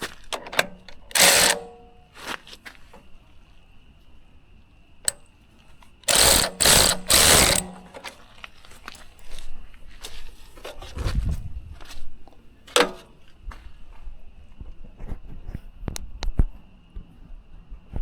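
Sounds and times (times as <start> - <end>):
jack stand ratcheting: 0.4 - 1.9, 6.0 - 8.2
light metal clicks and knocks: 12.7 - 13.2.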